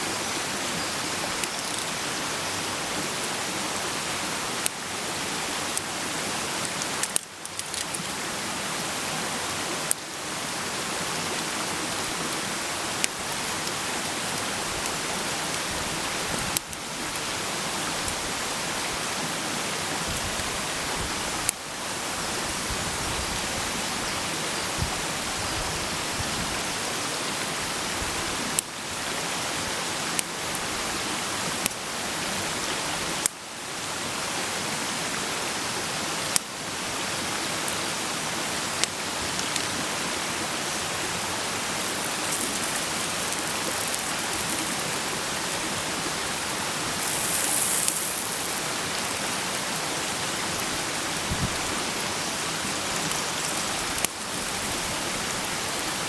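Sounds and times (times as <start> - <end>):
food sizzling in a pan: 47.0 - 48.6.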